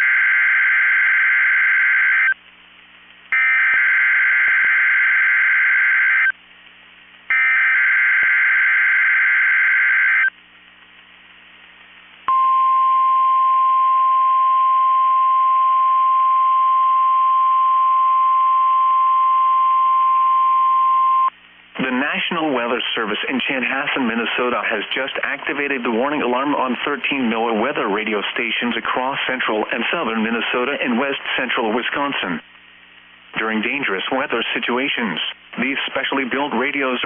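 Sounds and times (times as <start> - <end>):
steady warning alarm tone: 3.4 - 6.3, 7.3 - 10.3.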